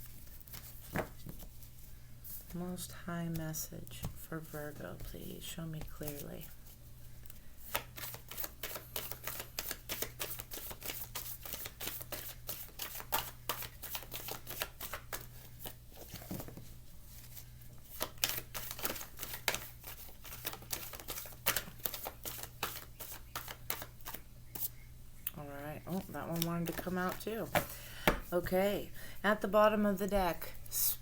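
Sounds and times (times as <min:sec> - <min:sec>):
low electrical hum: 0:00.0 - 0:31.0
cards being shuffled: 0:07.7 - 0:24.7, 0:25.9 - 0:28.2.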